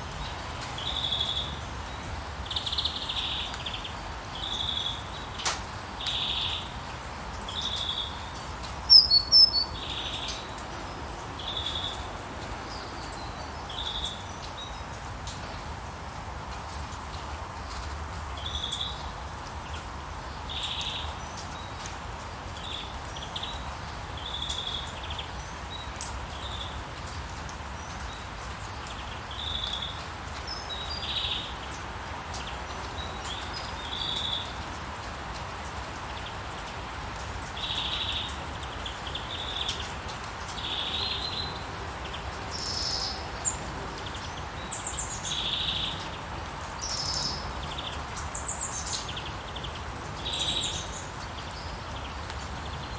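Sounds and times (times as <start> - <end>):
steady rain falling: 0.0 - 52.9
birds chirping: 8.8 - 10.6.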